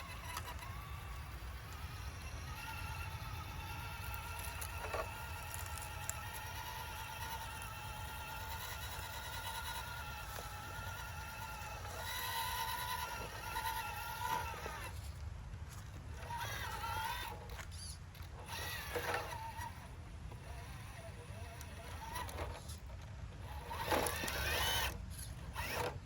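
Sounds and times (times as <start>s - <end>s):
small clicks: 0.0s - 15.3s
electric motor whining: 0.0s - 26.0s.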